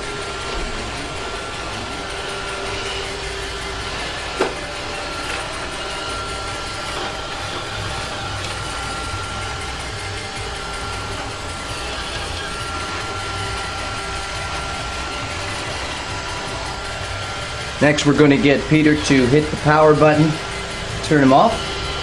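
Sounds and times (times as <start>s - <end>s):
high whine: 0.0s - 22.0s
robot vacuum running: 0.0s - 22.0s.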